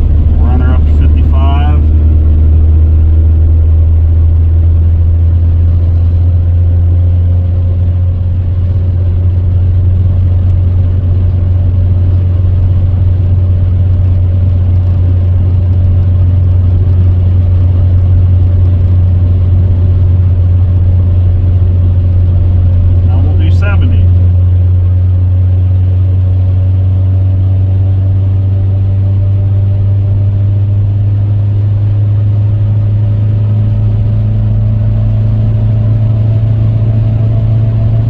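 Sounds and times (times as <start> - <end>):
road noise rush: 0.0 - 28.3
car engine drone: 0.0 - 38.0.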